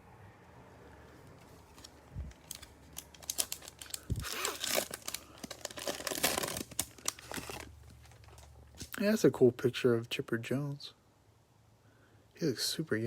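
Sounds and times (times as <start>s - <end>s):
wrapper tearing and crinkling: 1.6s - 9.0s.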